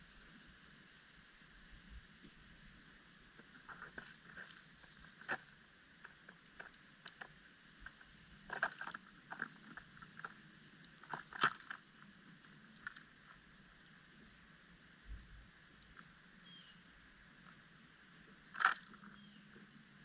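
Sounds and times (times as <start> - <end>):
faint high bird chirps: 14.6 - 16.8, 17.8 - 20.0.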